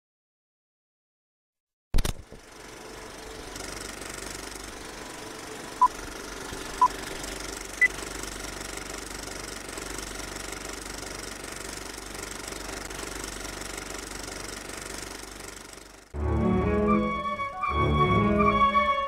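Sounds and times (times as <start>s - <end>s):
rattling mechanical hum: 2.0s - 16.8s.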